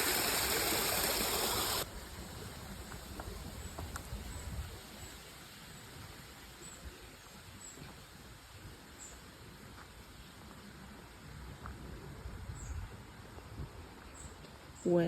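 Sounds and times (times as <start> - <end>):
running water rushing: 0.0 - 6.5.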